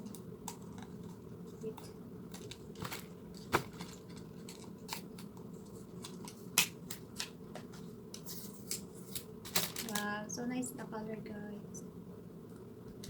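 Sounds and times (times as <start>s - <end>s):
steady low hum: 0.0s - 13.0s.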